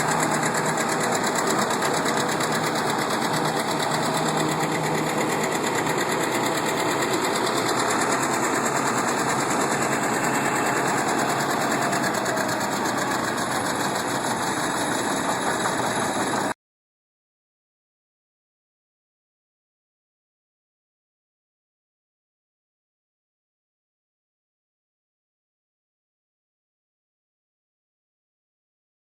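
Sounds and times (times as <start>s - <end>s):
machinery rattling: 0.0s - 16.5s
tractor engine running: 0.0s - 16.5s.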